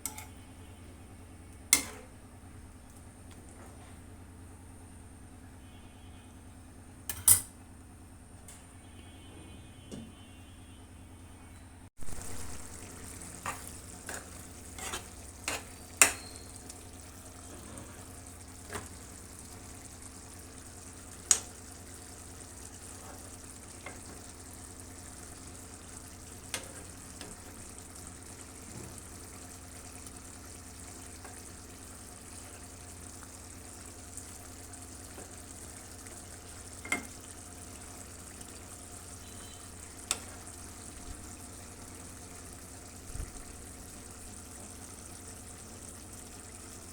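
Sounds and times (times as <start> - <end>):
meat sizzling in oil: 12.0 - 46.9
utensil clicking against pan: 14.8 - 16.4.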